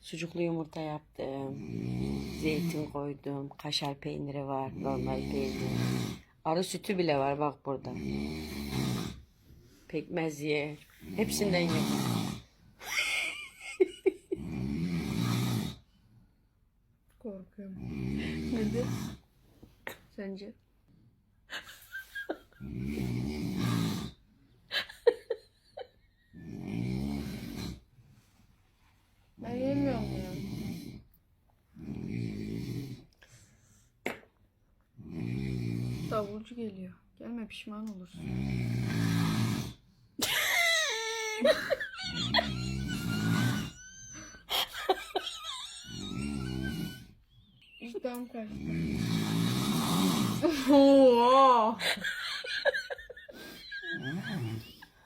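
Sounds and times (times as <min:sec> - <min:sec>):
person snoring: 0:01.4 - 0:03.0, 0:04.7 - 0:06.3, 0:07.8 - 0:09.2, 0:11.0 - 0:12.5, 0:13.8 - 0:15.9, 0:17.8 - 0:19.3, 0:22.5 - 0:24.2, 0:26.3 - 0:27.9, 0:29.4 - 0:31.1, 0:31.8 - 0:33.2, 0:35.0 - 0:36.4, 0:38.2 - 0:47.3, 0:48.5 - 0:55.0
high-pitched laughter: 0:40.2 - 0:47.1.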